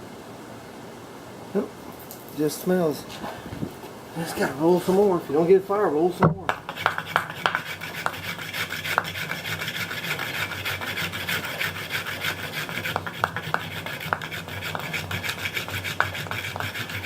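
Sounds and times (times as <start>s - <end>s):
board rasping over cotton roll: 4.2s - 17.0s.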